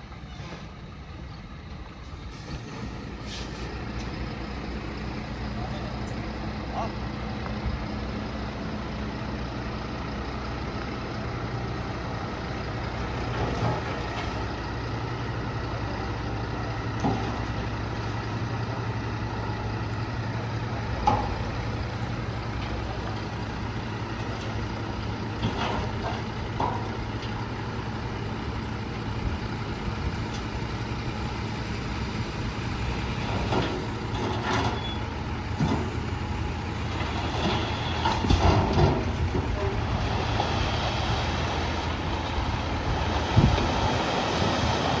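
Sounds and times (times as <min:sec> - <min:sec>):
diesel engine droning: 0:00.0 - 0:45.0
knocks and clanks: 0:24.1 - 0:27.4, 0:33.2 - 0:36.0, 0:37.0 - 0:39.8.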